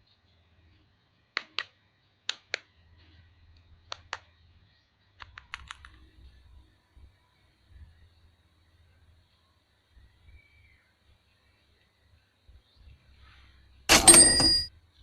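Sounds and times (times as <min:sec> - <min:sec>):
sharp plastic clicks: 0:05.2 - 0:06.0.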